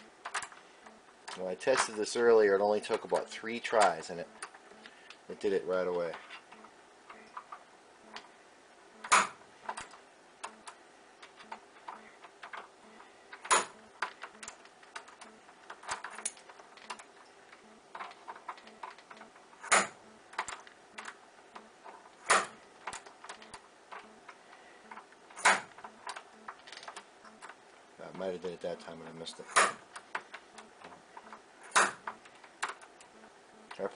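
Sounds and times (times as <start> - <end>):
key and pins clicking: 9.0 - 27.6.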